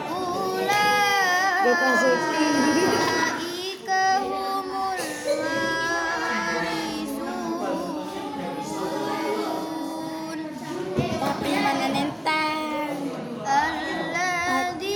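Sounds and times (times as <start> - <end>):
person chanting recitation: 0.0 - 10.4, 11.2 - 14.9.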